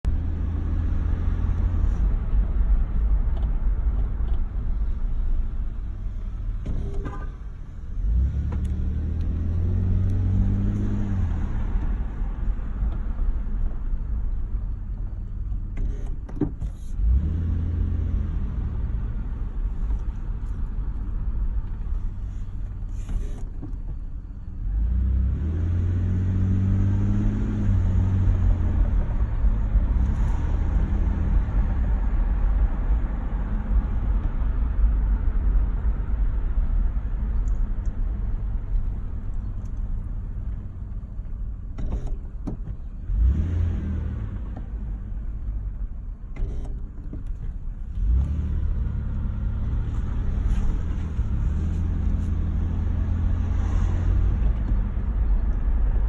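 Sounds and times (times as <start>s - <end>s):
car engine: 0.0s - 56.0s
road rumble: 0.0s - 56.0s.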